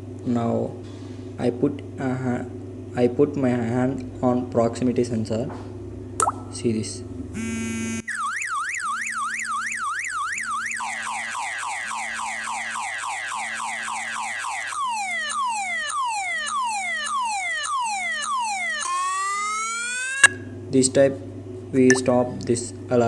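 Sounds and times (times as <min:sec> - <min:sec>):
phone alarm siren: 0:07.4 - 0:20.4.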